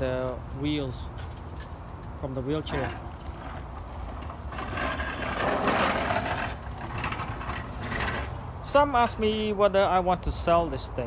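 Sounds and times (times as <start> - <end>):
lawn mower engine running: 1.8 - 9.6.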